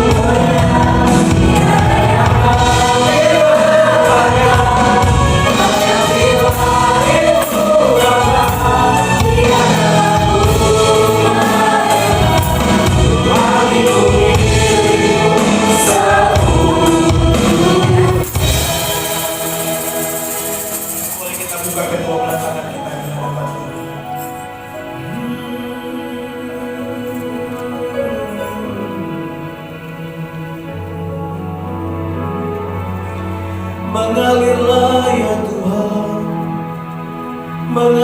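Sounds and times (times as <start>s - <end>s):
band with steady beat: 0.0s - 24.6s
choir singing: 0.0s - 38.0s.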